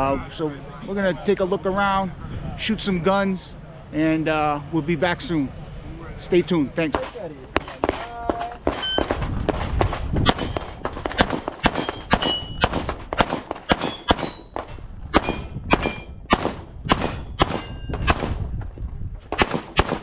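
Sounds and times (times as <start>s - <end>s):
rapid pistol shots: 7.0s - 14.6s, 15.2s - 18.4s, 19.3s - 20.0s
metallic ring of steel plate: 13.8s - 14.6s, 15.2s - 16.2s, 17.0s - 18.0s.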